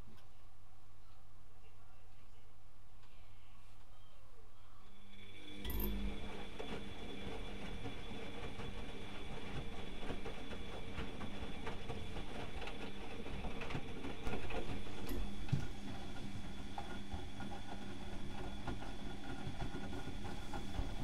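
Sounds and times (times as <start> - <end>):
washing machine motor hum: 5.0 - 21.0.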